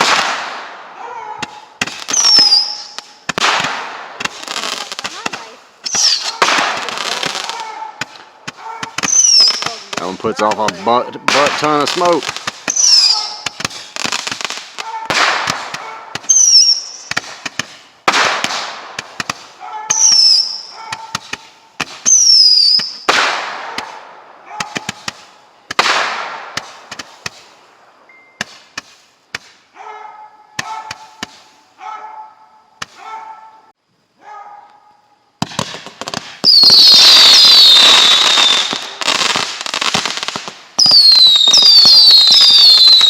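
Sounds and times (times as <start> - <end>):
small firework pops: 0.0 - 0.8, 1.4 - 27.7, 28.4 - 29.7, 30.6 - 31.6, 32.8 - 33.0, 35.4 - 43.0
fireworks bangs: 0.0 - 29.9, 30.5 - 31.8, 35.4 - 43.0
firework whistles falling in pitch: 1.4 - 3.2, 5.8 - 7.6, 8.9 - 9.9, 12.6 - 14.2, 14.8 - 17.3, 19.3 - 23.3, 36.4 - 43.0.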